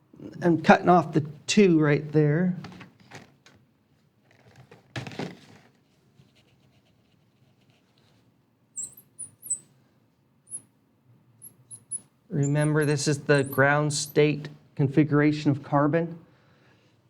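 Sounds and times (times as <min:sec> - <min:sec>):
marker squeaking on a whiteboard: 0:08.8 - 0:09.7, 0:10.5 - 0:10.7, 0:11.4 - 0:14.2.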